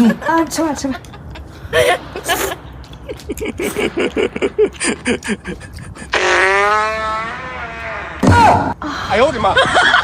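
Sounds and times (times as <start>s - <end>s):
fart sound effect: 6.1s - 8.5s.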